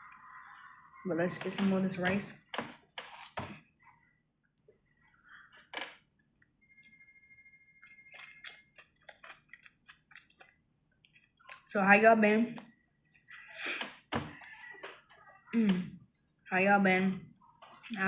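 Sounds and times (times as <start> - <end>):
person chewing food: 2.8 - 5.4, 7.8 - 11.7, 12.6 - 15.5.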